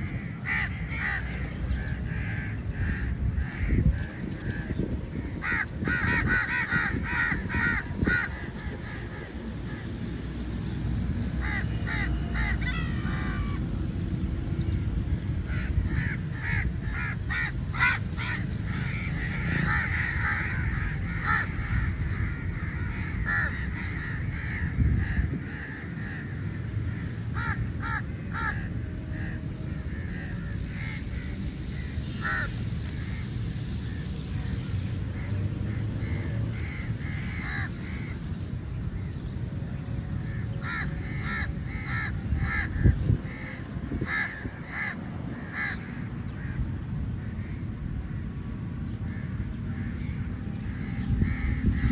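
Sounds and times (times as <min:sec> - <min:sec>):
crows cawing: 0:00.0 - 0:10.3, 0:11.1 - 0:13.6, 0:15.4 - 0:26.2, 0:27.4 - 0:34.0, 0:35.2 - 0:38.2, 0:40.2 - 0:46.6
steady low rumble: 0:00.0 - 0:25.7.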